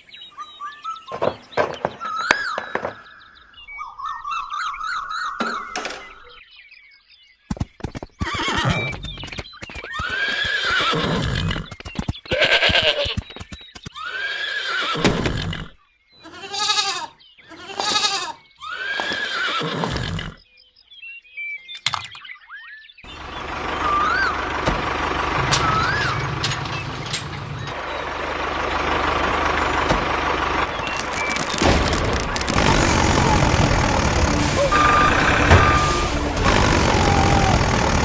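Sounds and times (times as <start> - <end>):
loud animal-like calls: 31.0 - 38.0.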